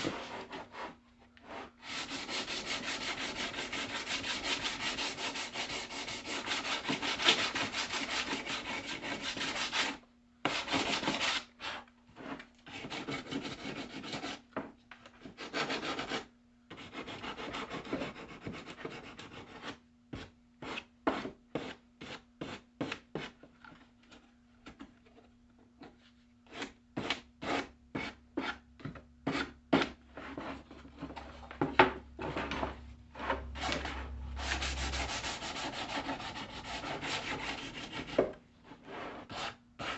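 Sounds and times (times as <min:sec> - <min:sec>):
wood being sanded by hand: 0:01.6 - 0:11.5, 0:34.4 - 0:38.2.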